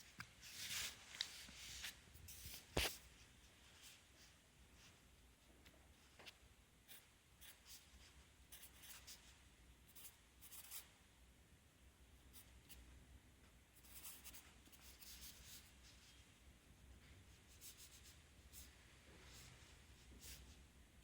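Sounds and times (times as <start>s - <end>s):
pencil writing on paper: 6.9s - 9.2s, 9.9s - 10.9s, 13.8s - 15.7s.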